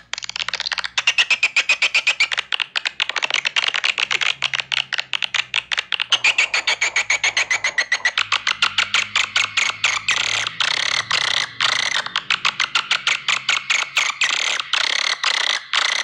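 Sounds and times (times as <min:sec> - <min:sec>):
swiftlet chirping chatter: 0:05.5 - 0:16.0.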